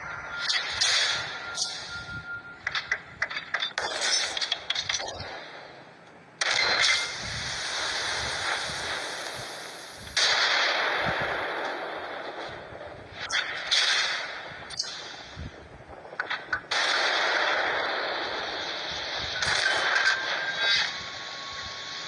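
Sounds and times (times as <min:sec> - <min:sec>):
heavy gunshot blasts: 0:06.4 - 0:15.5
rapid gunfire burst: 0:06.4 - 0:21.5.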